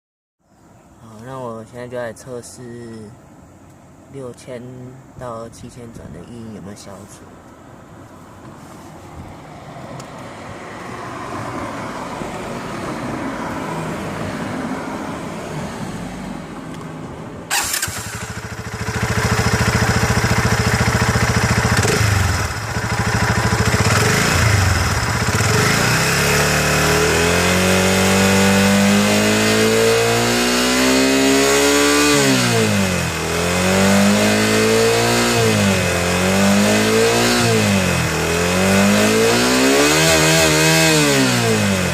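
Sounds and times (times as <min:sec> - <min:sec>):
motorcycle engine revving: 0:17.5 - 0:41.9.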